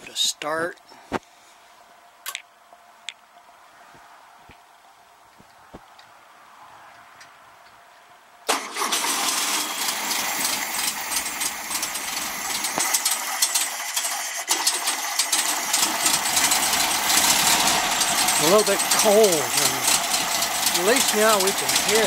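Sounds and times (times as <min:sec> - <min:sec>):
car engine starting and running: 0:08.4 - 0:22.0.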